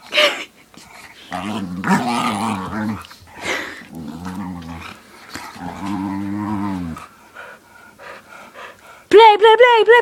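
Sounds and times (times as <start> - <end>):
dog growling: 1.1 - 8.2.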